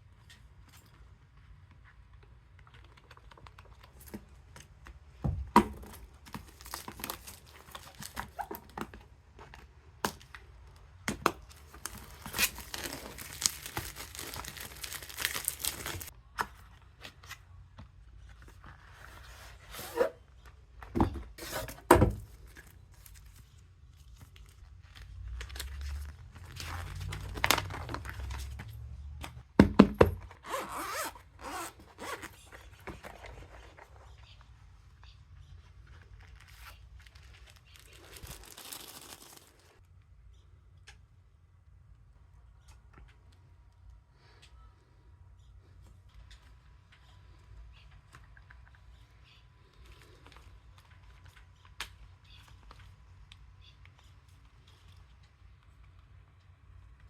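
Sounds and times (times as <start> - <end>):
paper and plastic tearing: 11.6 - 16.1, 36.2 - 39.8.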